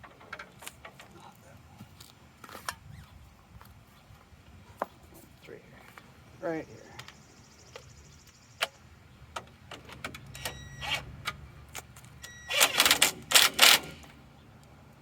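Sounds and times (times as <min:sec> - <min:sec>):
loud rattling bursts: 0:12.5 - 0:14.1.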